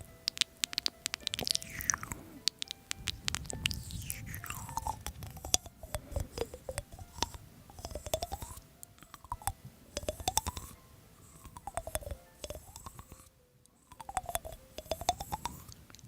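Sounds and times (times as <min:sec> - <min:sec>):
person chewing crunchy food: 0:00.0 - 0:16.0
faint whistle-like sweeping tones: 0:01.5 - 0:08.8.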